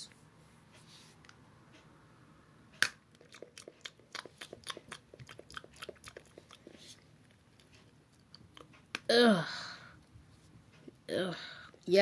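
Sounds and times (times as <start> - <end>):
crisp chewing crunches: 3.2 - 8.8.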